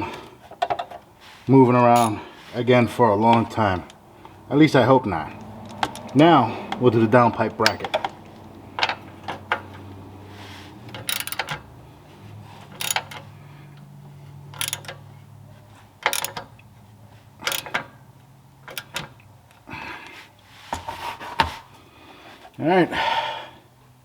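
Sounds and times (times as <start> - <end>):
ratchet wrench clicking: 10.9 - 11.7, 12.7 - 15.1, 16.0 - 16.7, 17.4 - 18.0, 18.6 - 19.2.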